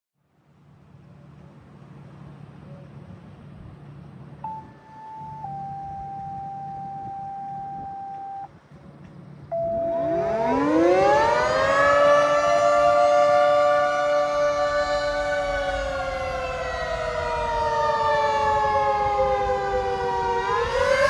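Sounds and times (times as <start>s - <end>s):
steady electronic tone: 9.5s - 12.6s, 13.6s - 21.0s
tornado siren winding up: 9.5s - 21.0s.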